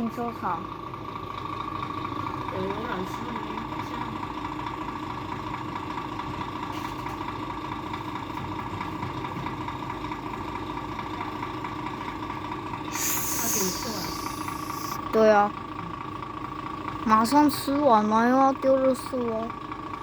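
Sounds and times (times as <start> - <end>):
vehicle engine idling: 0.0 - 20.0
constant hum: 12.9 - 15.6.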